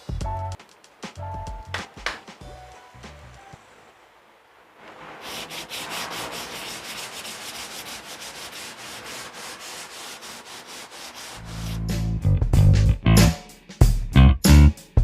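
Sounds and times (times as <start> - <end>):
sandpaper rubbing back and forth: 4.8 - 12.2.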